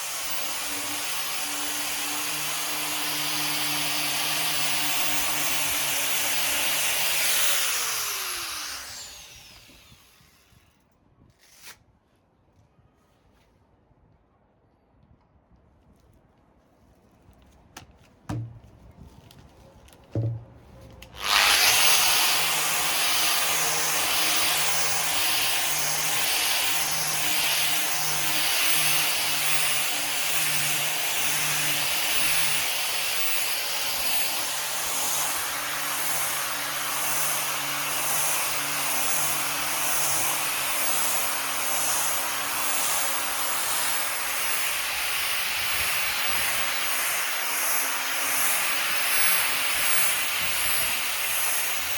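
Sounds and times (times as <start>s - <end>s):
orbital sander on wood: 0.0s - 10.5s, 21.1s - 51.9s
knocks: 18.3s - 18.7s, 20.1s - 20.6s.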